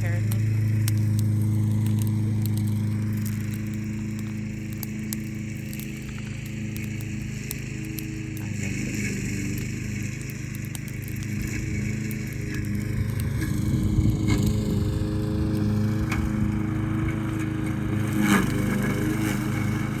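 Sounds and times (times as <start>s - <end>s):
sharp crackles and pops: 0.0s - 20.0s
small engine running: 0.0s - 20.0s.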